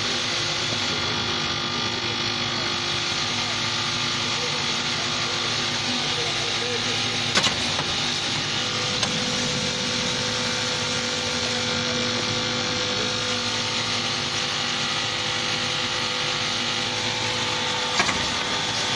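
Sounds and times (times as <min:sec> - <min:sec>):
nail making machine running: 0:00.0 - 0:18.9.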